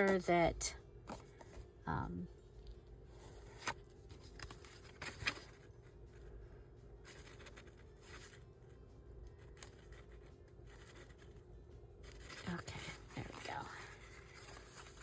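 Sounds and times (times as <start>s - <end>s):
faint steady hum: 0.0s - 15.0s
paper rustling and scraping: 3.2s - 6.3s, 7.0s - 8.6s, 9.3s - 11.4s, 12.0s - 15.0s.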